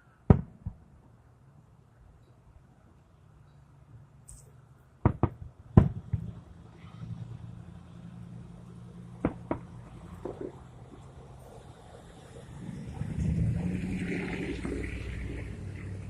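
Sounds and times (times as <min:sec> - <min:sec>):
firework bangs: 0:00.3 - 0:00.8, 0:05.0 - 0:06.4, 0:09.2 - 0:10.7.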